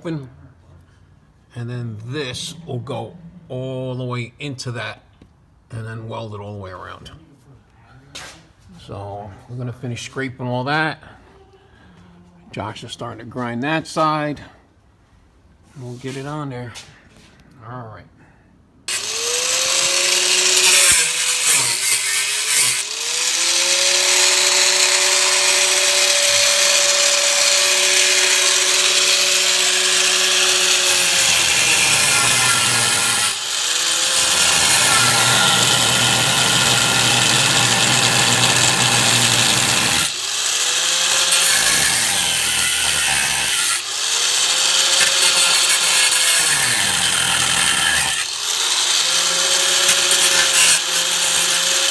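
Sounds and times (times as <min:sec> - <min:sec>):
angle grinder grinding metal: 0:18.9 - 0:51.9.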